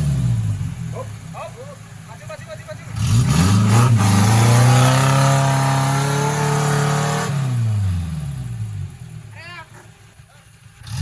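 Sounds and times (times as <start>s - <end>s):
engine revving hard: 2.8s - 8.9s, 10.8s - 11.0s.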